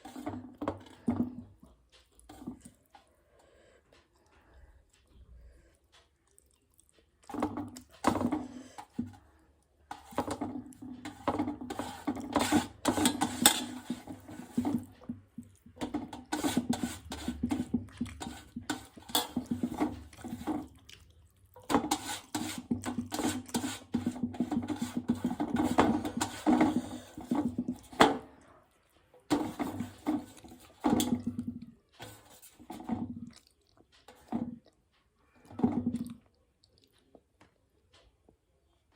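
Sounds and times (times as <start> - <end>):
wet squelching and smacking eating: 1.6 - 9.9, 17.4 - 24.0, 33.1 - 37.6.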